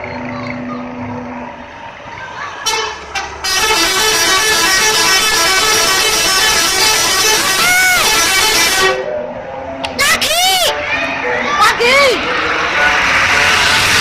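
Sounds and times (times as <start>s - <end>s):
busy road traffic: 0.0s - 14.0s
vehicle horns honking: 2.6s - 9.1s.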